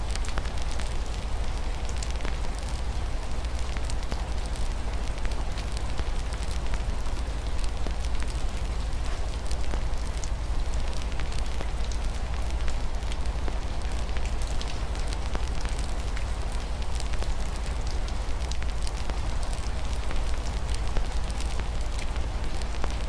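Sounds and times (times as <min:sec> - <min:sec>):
rain against window: 0:00.0 - 0:23.0
wood fire crackling: 0:00.0 - 0:23.0.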